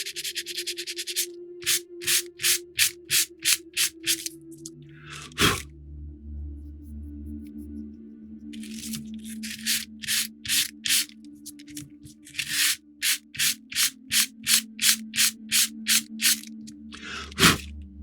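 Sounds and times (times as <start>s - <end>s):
sandpaper rubbing wood: 0.0s - 4.3s, 5.1s - 5.6s, 8.6s - 17.7s.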